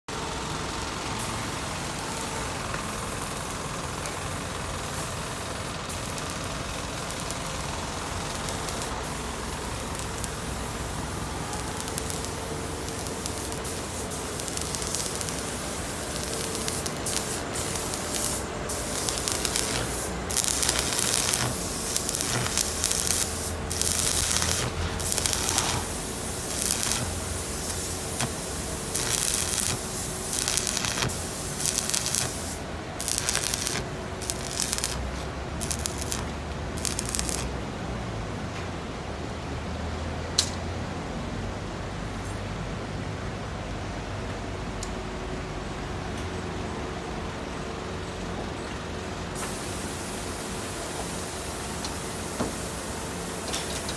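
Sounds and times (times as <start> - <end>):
welding arc hissing and crackling: 0.2 - 37.7, 49.3 - 53.9.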